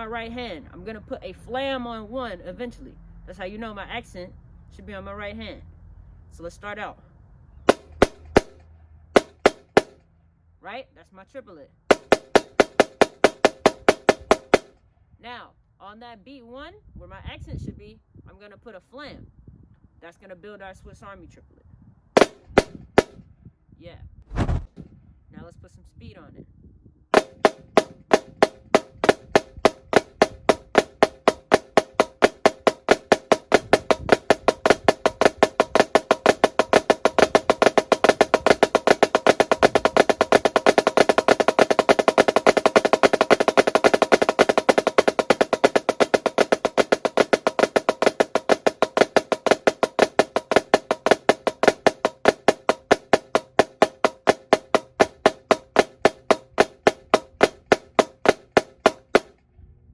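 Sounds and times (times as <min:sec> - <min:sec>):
drumsticks on a drum: 0:07.7 - 0:08.6, 0:09.2 - 0:10.0, 0:11.9 - 0:14.7, 0:22.2 - 0:23.1, 0:27.2 - 0:59.3.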